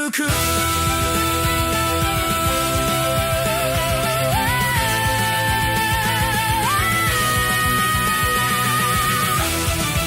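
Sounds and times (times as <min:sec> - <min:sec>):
rock song with drum beat: 0:00.3 - 0:10.0.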